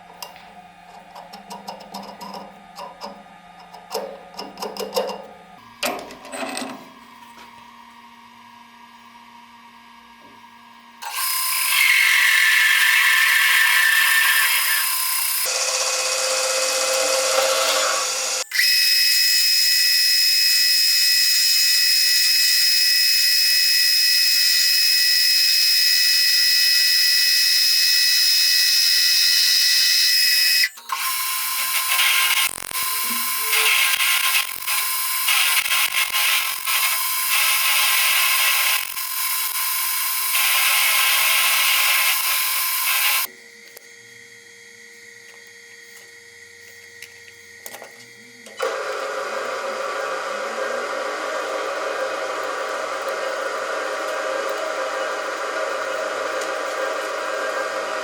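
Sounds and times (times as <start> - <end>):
machine tools cutting steel: 11.0 - 19.4, 28.4 - 43.3
constant high whine: 31.5 - 37.6, 42.2 - 48.6.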